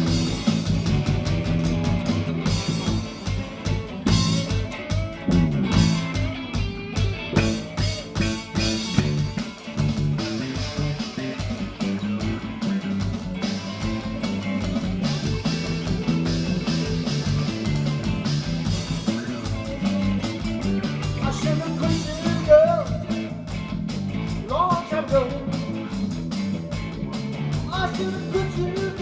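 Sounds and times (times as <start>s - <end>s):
blues-rock band playing: 0.0s - 29.0s
sliding lead guitar line: 0.0s - 29.0s.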